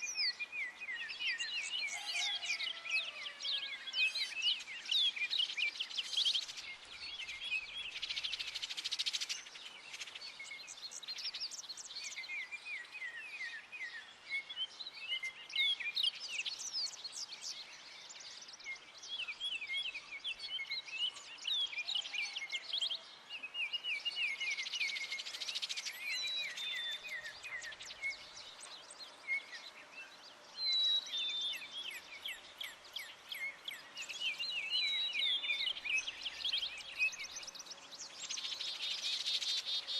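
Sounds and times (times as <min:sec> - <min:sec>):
songbirds chirping and singing: 0:00.0 - 0:39.9.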